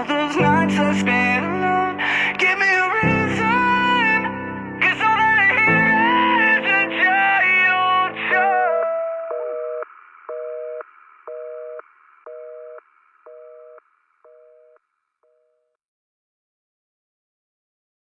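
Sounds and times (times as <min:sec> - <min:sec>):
telephone busy signal beeps: 0:09.3 - 0:14.8.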